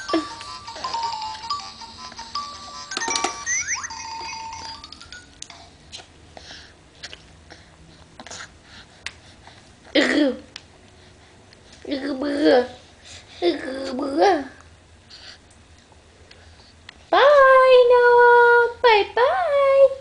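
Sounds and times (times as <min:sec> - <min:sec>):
electronic beeping tune: 0:02.9 - 0:05.1.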